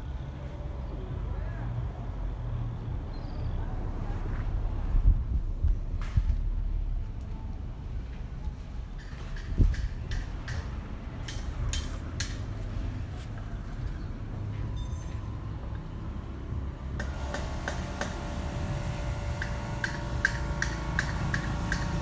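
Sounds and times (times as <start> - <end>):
low rumble: 0.7 - 16.8.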